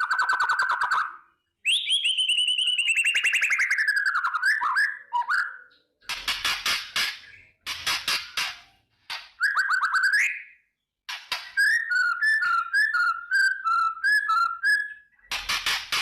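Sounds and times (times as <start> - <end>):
bird whistling song: 0.0 - 5.9, 9.2 - 15.5.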